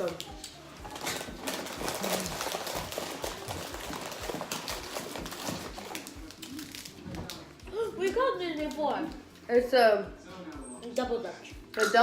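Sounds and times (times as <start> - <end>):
snack packaging crinkling: 0.0 - 7.5.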